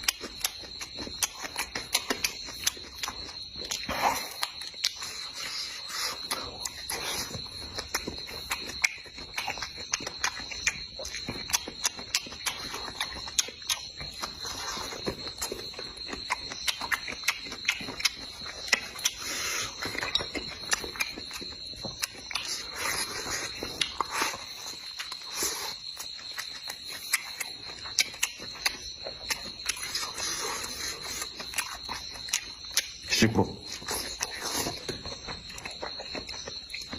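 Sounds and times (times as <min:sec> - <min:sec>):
crickets chirring: 0:00.0 - 0:36.9
crunchy chewing: 0:00.0 - 0:36.9
mouth smacks: 0:16.3 - 0:35.1.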